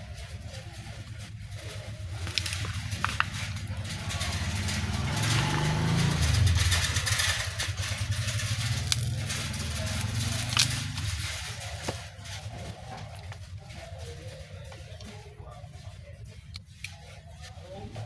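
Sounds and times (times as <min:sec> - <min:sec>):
vehicle engine passing: 0:01.2 - 0:13.7.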